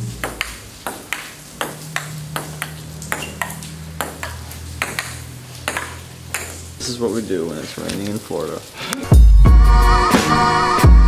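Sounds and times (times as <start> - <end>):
table tennis ball clicking: 0.2 - 6.5.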